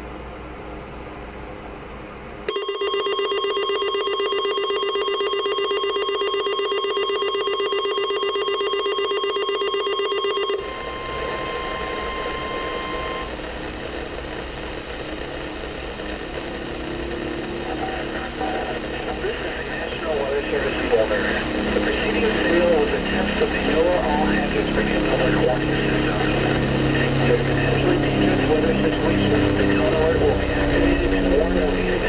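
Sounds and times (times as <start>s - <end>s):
rapidly pulsing alarm buzz: 2.5s - 32.0s
steady high warning tone: 2.5s - 32.0s
radio hiss: 10.6s - 32.0s.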